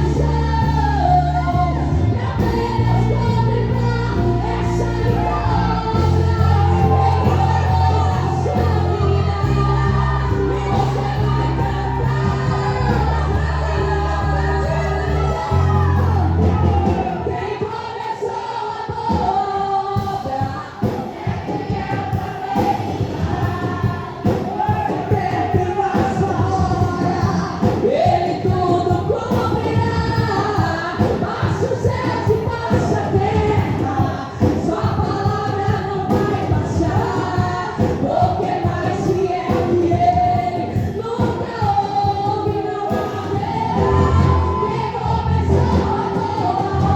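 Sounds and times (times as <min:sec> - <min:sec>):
band playing: 0:00.0 - 0:17.8, 0:41.6 - 0:46.9
voices singing gospel: 0:00.0 - 0:46.9.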